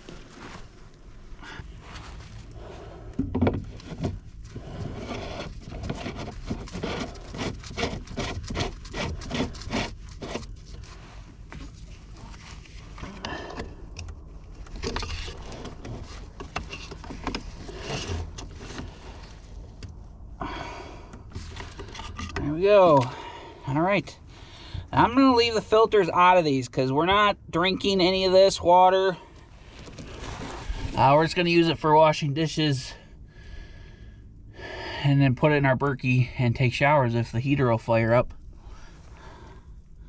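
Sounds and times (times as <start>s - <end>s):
plastic canisters knocking and scraping: 3.2s - 10.5s, 13.0s - 19.2s.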